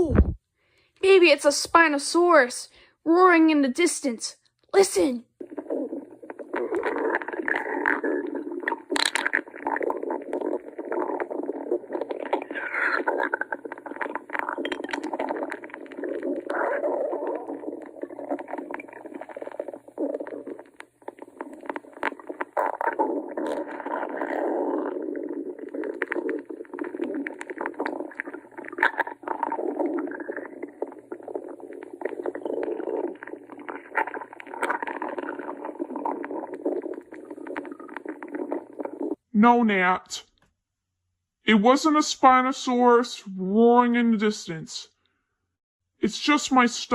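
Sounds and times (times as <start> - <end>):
stomach growling: 0.0 - 0.4, 5.2 - 39.3.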